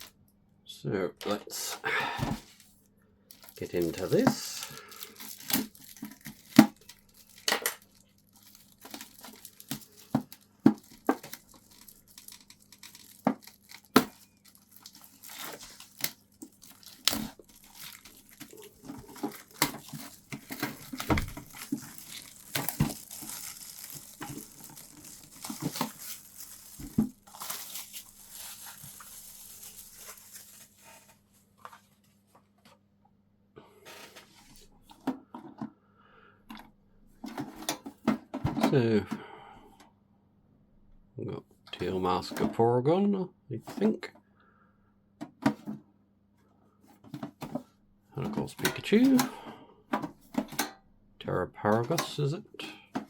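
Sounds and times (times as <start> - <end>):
plastic wrapping tearing and crinkling: 3.3 - 31.2, 48.6 - 49.4.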